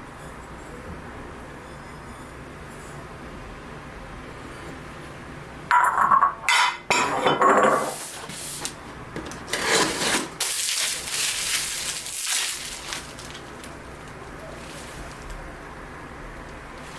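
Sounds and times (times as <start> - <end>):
dishes and utensils clattering: 5.7 - 8.1
rustling: 10.4 - 15.5.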